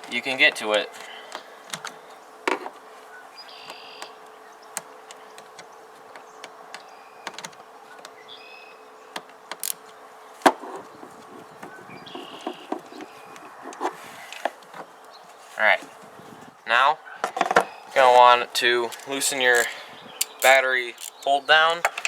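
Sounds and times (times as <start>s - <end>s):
wrench clicking on metal: 9.6s - 9.8s, 18.9s - 21.3s.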